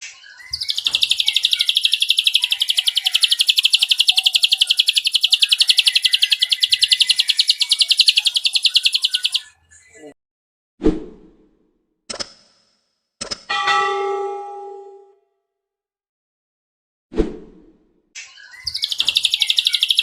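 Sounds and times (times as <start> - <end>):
bird singing rapid high trill: 0.3 - 9.5, 18.5 - 20.0.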